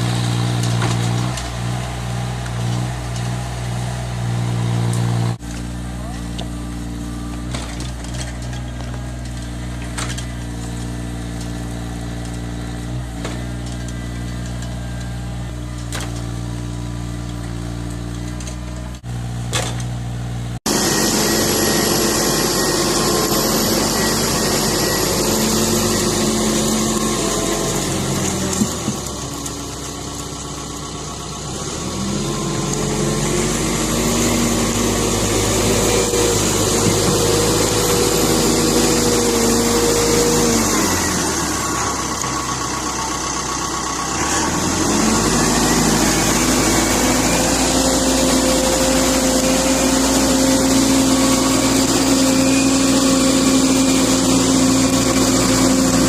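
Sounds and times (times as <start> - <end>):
engine humming: 0.0 - 56.0.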